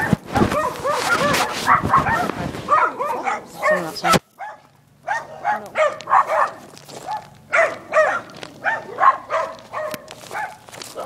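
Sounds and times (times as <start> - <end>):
dogs barking: 0.0 - 11.0.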